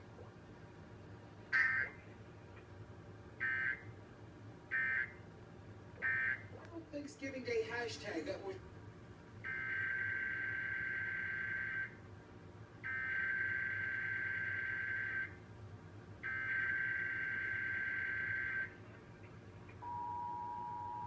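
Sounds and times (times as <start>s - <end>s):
two-tone attention signal: 19.8s - 21.0s.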